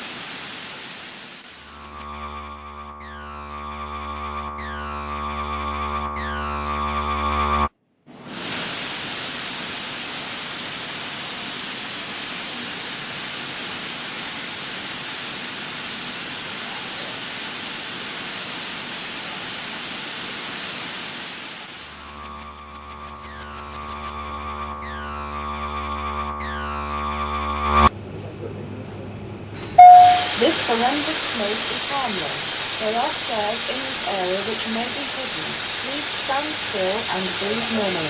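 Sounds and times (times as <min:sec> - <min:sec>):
fog generator hissing: 0:00.0 - 0:02.0, 0:08.7 - 0:22.1, 0:29.8 - 0:38.0
synthesizer drone: 0:01.7 - 0:07.7.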